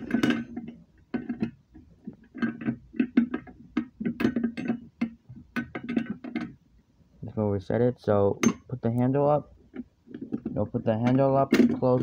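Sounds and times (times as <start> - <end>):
metallic clicks and clanks: 0.0 - 6.6.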